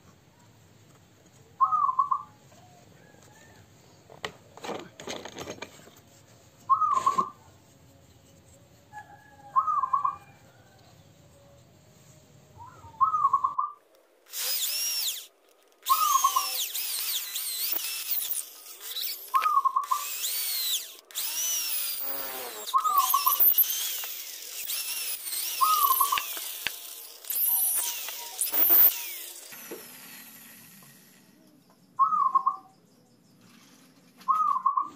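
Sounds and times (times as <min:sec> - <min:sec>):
bird call: 0:01.6 - 0:02.3, 0:06.7 - 0:07.4, 0:32.0 - 0:32.8, 0:34.2 - 0:34.9
wood lathe cutting wood: 0:14.3 - 0:31.3.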